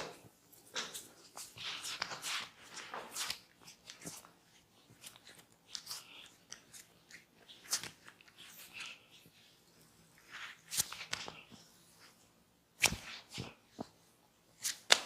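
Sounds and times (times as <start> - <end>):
hands rubbing skin and hair: 0.0 - 9.4.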